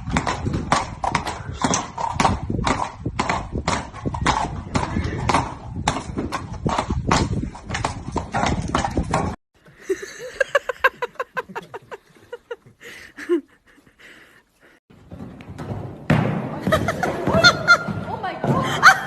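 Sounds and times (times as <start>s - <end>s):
horse hooves clip-clopping: 0.0s - 12.9s, 14.9s - 19.0s
horse whinnying: 4.1s - 5.8s.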